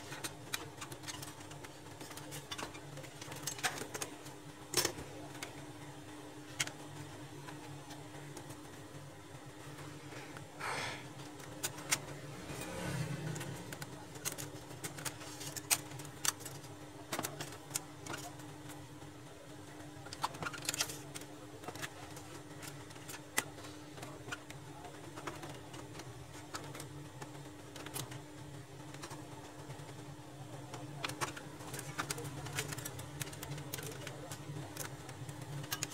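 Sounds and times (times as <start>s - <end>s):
steady low hum: 0.0s - 35.9s
plastic and metal parts clicking: 13.3s - 18.4s, 30.7s - 35.9s.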